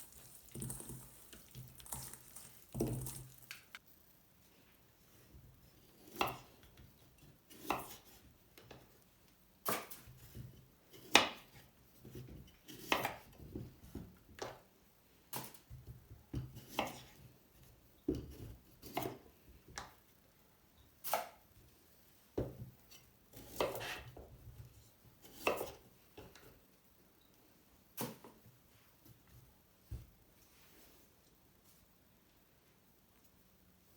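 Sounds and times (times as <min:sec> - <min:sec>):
knife chopping on cutting board: 0:23.4 - 0:24.0.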